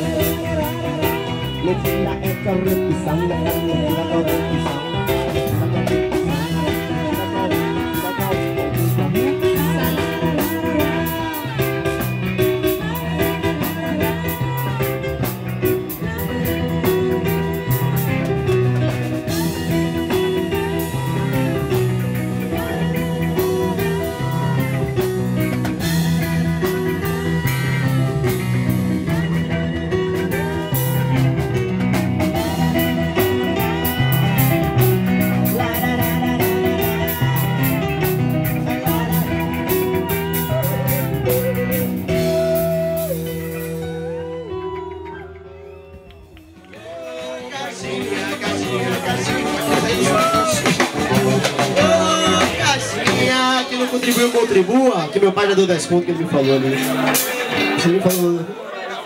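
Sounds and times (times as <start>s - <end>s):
electric guitar bent notes: 0.0s - 58.5s
live rock band playing: 0.0s - 59.0s.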